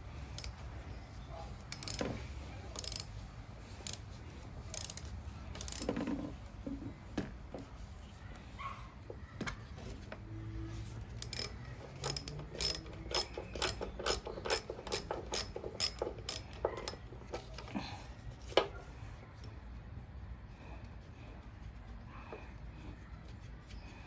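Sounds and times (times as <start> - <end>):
ratchet wrench clicking: 0.4 - 0.6, 1.7 - 2.1, 2.8 - 3.1, 3.8 - 4.0, 4.7 - 5.9, 11.2 - 17.5.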